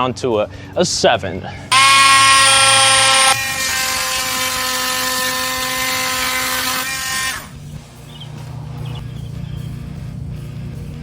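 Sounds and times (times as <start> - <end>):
multi-tool buzzing whine: 1.7 - 8.0
background music: 3.9 - 11.0.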